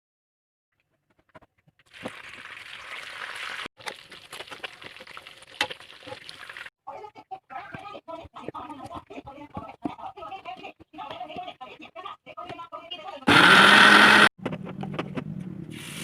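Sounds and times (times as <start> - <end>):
food sizzling in hot oil: 1.9 - 6.7, 15.7 - 16.0.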